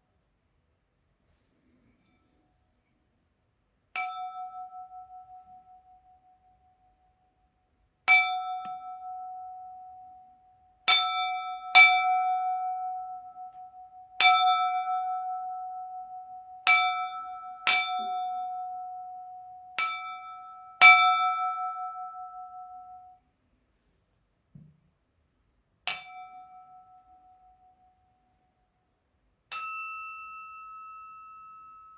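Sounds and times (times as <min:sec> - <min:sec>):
crystal glass tapped ringing: 0:29.5 - 0:31.9.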